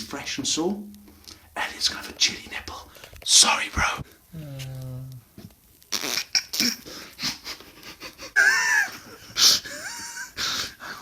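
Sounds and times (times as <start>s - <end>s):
person squealing: 8.4s - 9.1s.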